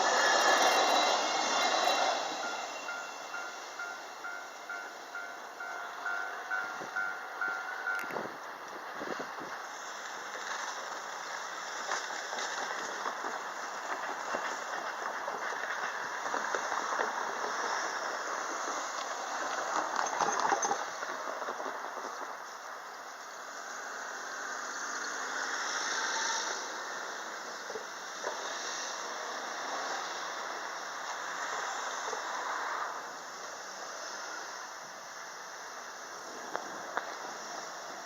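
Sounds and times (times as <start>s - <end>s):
train wheels clattering over rails: 0.0s - 22.6s.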